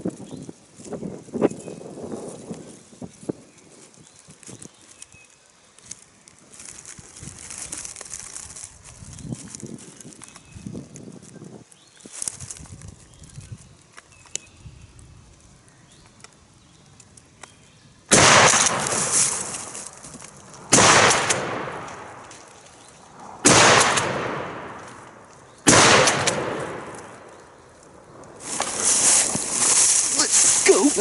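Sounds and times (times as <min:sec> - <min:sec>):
shotgun shots: 0:18.1 - 0:19.5, 0:20.7 - 0:22.2, 0:23.4 - 0:24.8, 0:25.6 - 0:27.3.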